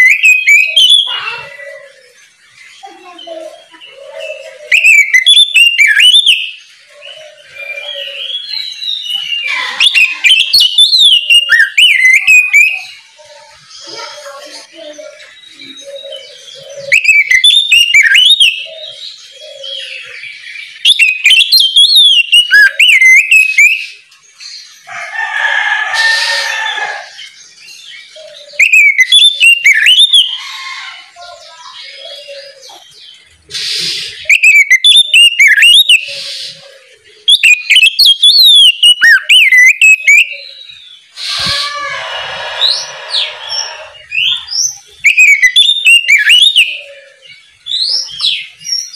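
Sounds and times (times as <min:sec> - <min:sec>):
harsh raspy bird calls: 0:00.0 - 0:24.1, 0:24.7 - 0:48.9
bird singing whistles and warbles: 0:00.0 - 0:24.4, 0:27.2 - 0:30.5, 0:31.4 - 0:48.9.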